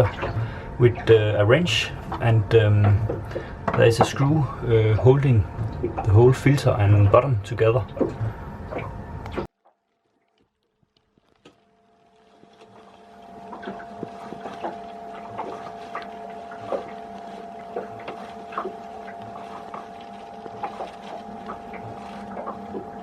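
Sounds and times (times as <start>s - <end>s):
steady hum: 11.7s - 23.0s.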